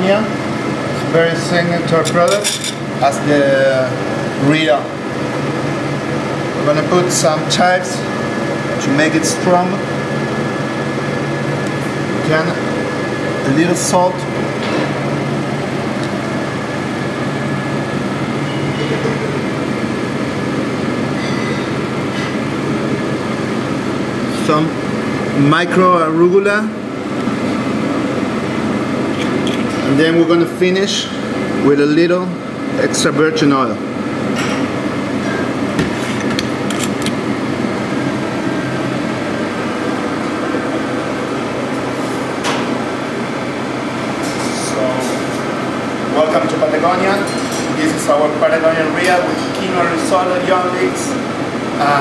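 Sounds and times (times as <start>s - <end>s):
ventilation fan humming: 0.0s - 52.0s.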